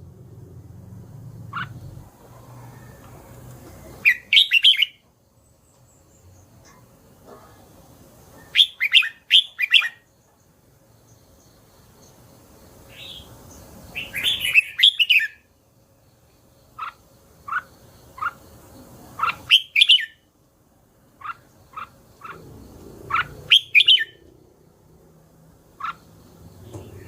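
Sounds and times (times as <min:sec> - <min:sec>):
bulbul singing warbled phrases: 0:04.0 - 0:05.0, 0:08.4 - 0:10.1, 0:12.9 - 0:15.4, 0:16.6 - 0:20.2, 0:21.2 - 0:24.2.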